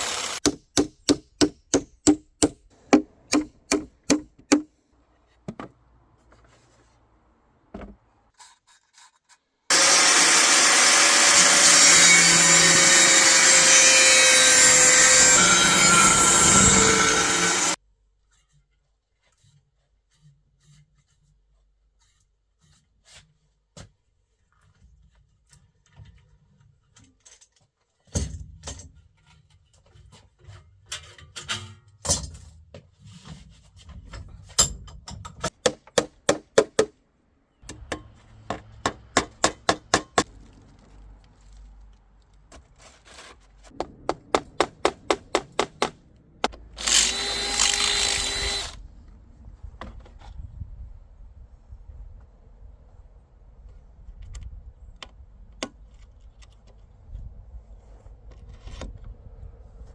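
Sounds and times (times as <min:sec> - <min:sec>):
power drill running: 0:00.0 - 0:00.4, 0:09.7 - 0:17.8, 0:46.8 - 0:48.8.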